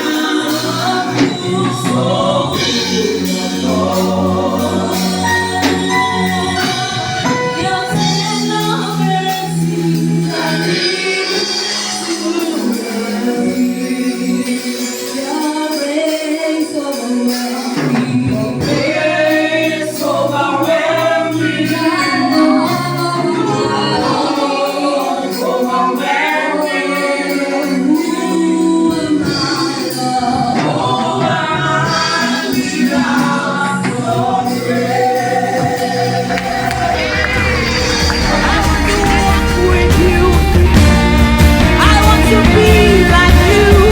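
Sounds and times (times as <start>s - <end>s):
gospel choir singing: 0.0s - 43.9s
instrumental accompaniment: 0.0s - 43.9s
low bass line: 36.2s - 43.9s.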